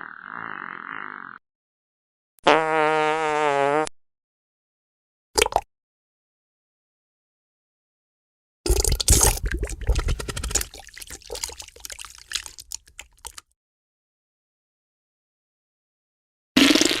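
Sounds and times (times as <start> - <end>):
sputtering fart: 0.0 - 1.4, 2.4 - 3.9, 16.6 - 17.0.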